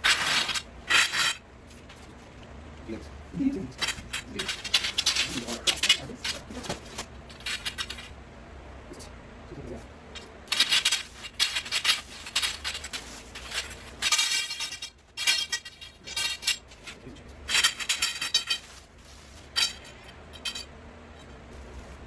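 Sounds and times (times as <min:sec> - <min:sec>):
metal poles clinking: 0:00.0 - 0:02.1, 0:03.7 - 0:08.1, 0:10.1 - 0:20.7.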